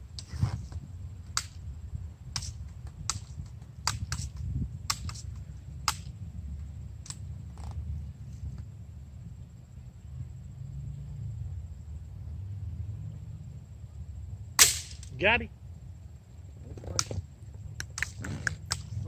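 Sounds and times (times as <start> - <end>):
bb guns firing: 14.6 - 15.2.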